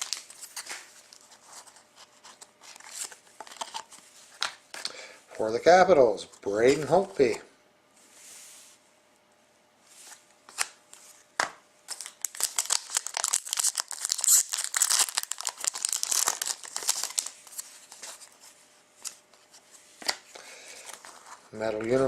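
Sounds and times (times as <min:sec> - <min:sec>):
foil wrapper crinkling: 0:00.0 - 0:01.2, 0:11.9 - 0:18.3.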